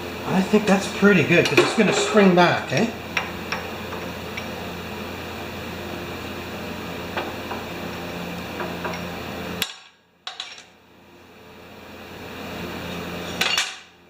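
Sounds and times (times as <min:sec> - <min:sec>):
press machine humming: 0:00.0 - 0:09.6.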